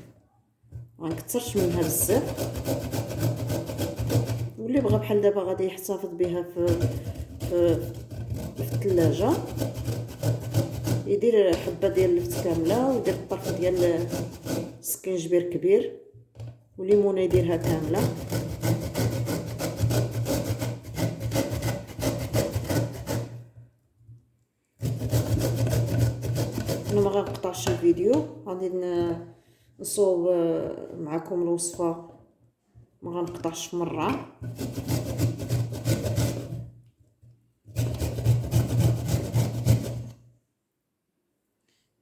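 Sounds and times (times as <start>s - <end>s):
vegetable grated on metal grater: 1.1s - 5.4s, 6.2s - 15.0s, 17.3s - 23.4s, 24.8s - 28.2s, 33.6s - 36.7s, 37.7s - 40.2s.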